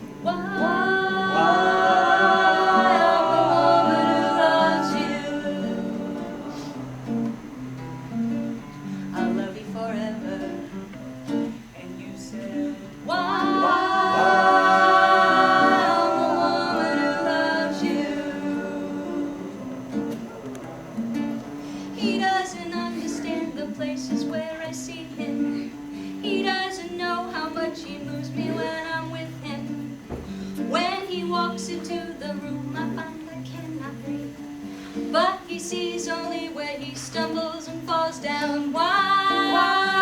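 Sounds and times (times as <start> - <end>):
acoustic guitar: 0.0 - 40.0
person singing: 0.3 - 7.1, 11.8 - 19.6, 21.9 - 29.8, 35.2 - 40.0.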